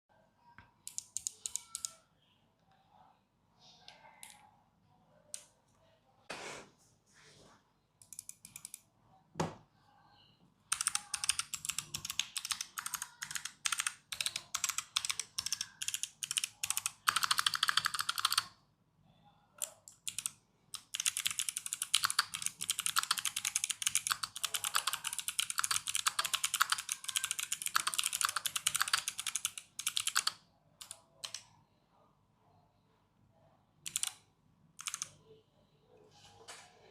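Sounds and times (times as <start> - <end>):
clicky mechanical keyboard typing: 0.8 - 2.0, 8.0 - 8.8, 10.7 - 18.5, 19.6 - 31.5, 33.8 - 34.2, 34.8 - 35.2.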